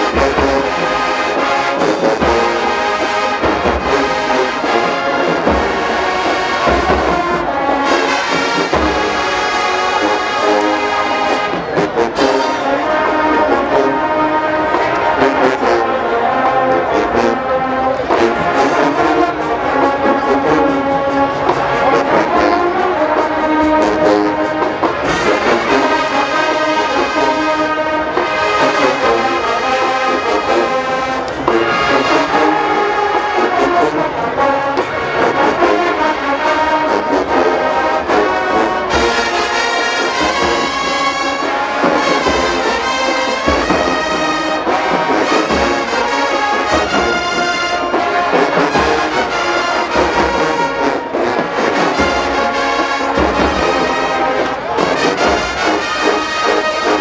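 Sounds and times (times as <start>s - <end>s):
brass band playing a slow ballad: 0.0s - 57.0s.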